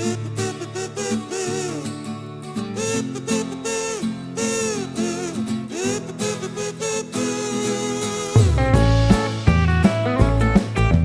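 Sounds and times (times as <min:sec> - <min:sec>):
person singing: 0:00.0 - 0:02.0, 0:02.8 - 0:08.8
guitar accompaniment: 0:00.0 - 0:11.0.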